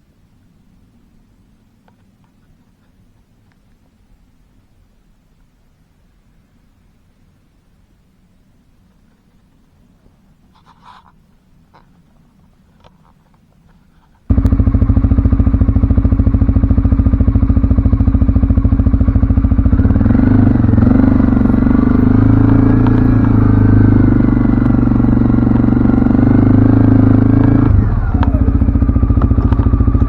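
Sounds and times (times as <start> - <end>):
atv engine running: 14.3 - 30.0.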